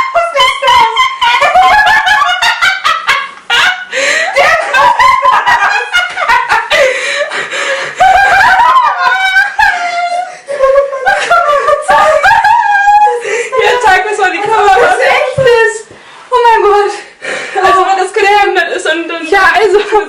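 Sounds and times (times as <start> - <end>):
women laughing loudly: 0.0 - 15.7.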